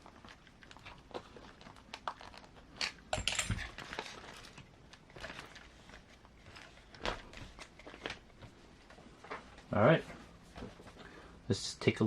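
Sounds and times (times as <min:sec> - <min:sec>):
rustling: 0:03.5 - 0:11.2.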